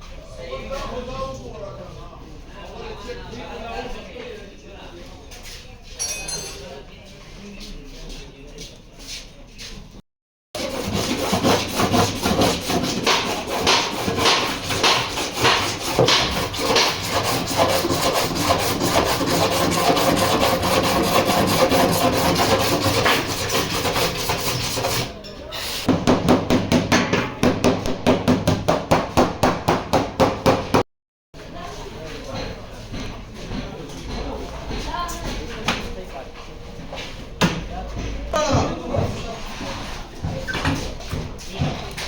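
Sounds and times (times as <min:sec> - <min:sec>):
sanding on car bodywork: 0:10.6 - 0:25.2.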